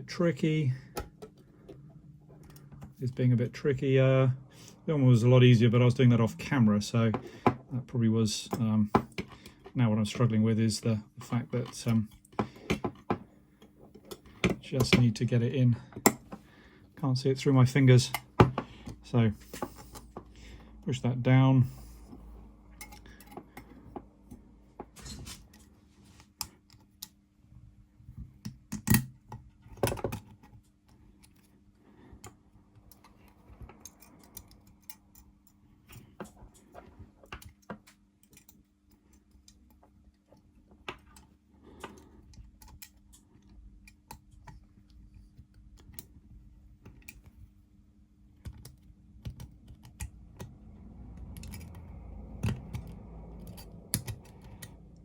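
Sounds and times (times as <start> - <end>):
small metallic clicks and scrapes: 29.7 - 46.1, 48.4 - 55.0.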